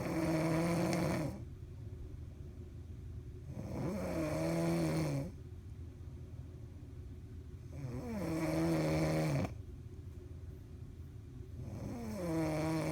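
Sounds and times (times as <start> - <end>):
woman snoring: 0.0 - 1.4, 7.8 - 9.5, 11.7 - 12.9.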